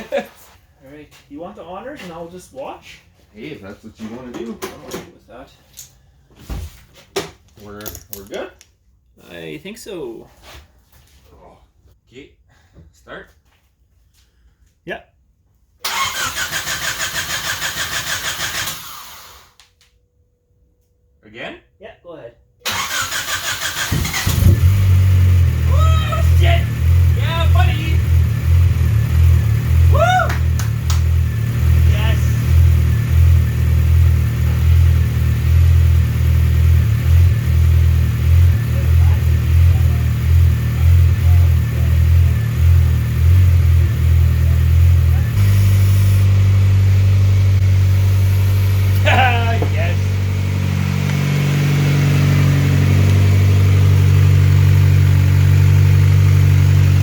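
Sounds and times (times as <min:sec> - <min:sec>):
starter motor cranking: 0:15.9 - 0:19.5, 0:22.7 - 0:24.8
car engine idling unevenly: 0:24.6 - 0:57.0.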